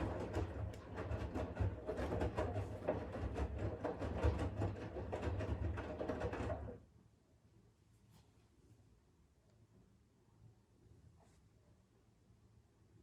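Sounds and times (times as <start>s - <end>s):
washing machine motor hum: 0.0s - 6.9s.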